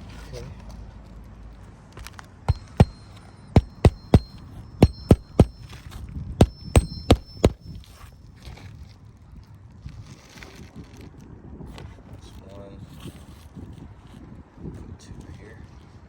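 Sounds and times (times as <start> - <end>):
hammer striking roofing nails: 2.5 - 5.6, 6.4 - 7.6.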